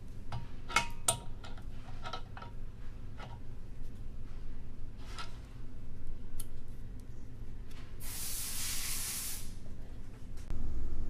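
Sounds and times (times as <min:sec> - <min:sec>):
steady low hum: 0:00.0 - 0:11.0
compressed air hissing: 0:08.0 - 0:09.6.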